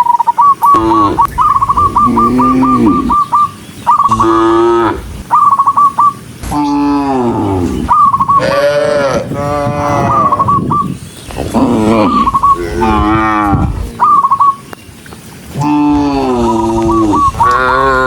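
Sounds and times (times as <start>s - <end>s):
cattle mooing: 0.7s - 3.3s, 4.1s - 5.1s, 6.5s - 10.4s, 11.4s - 14.0s, 15.6s - 18.0s.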